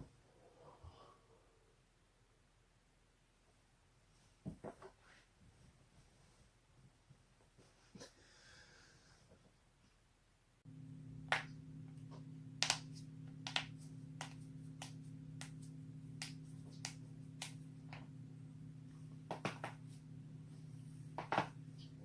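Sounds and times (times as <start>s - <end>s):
steady low hum: 10.6s - 22.0s.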